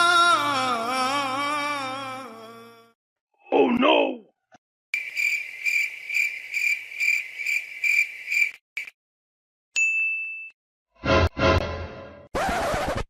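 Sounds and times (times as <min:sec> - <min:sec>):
cricket chirping: 0:05.0 - 0:08.9.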